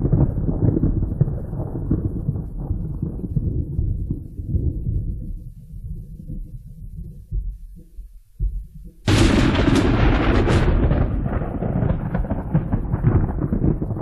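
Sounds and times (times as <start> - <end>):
sharp thunderclap: 0.0 - 5.4, 9.0 - 14.0
low thunder rumble: 0.0 - 14.0.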